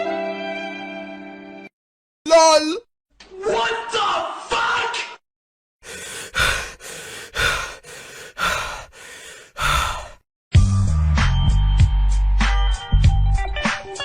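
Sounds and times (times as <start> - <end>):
person breathing heavily: 5.8 - 10.3.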